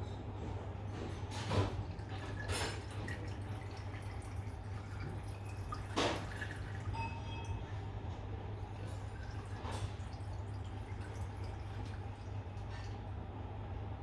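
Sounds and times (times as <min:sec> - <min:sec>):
liquid dripping and splashing: 0:01.6 - 0:07.0, 0:08.6 - 0:13.2.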